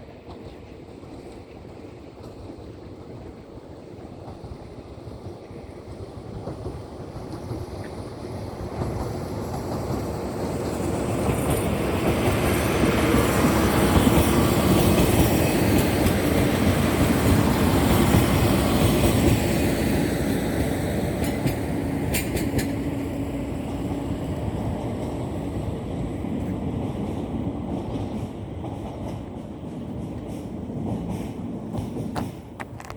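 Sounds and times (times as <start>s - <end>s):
diesel locomotive engine: 0.0s - 32.9s
wheels on rail: 0.0s - 32.9s.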